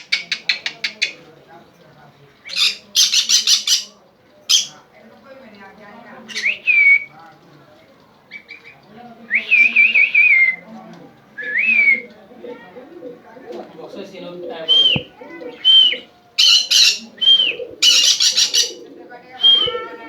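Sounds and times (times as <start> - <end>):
parrots squawking: 2.5 - 3.9, 4.5 - 4.8, 14.9 - 20.0
parrot whistled calls: 14.7 - 18.7.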